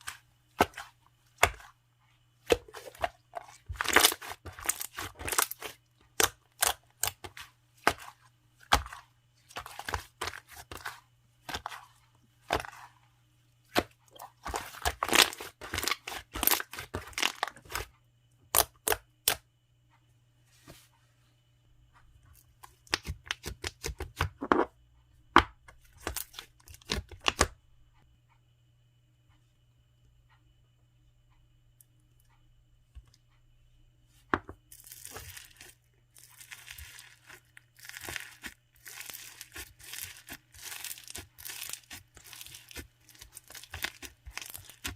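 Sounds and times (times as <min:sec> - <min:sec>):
slime squishing and crackling: 0:02.5 - 0:12.9, 0:13.7 - 0:17.9, 0:34.7 - 0:44.9.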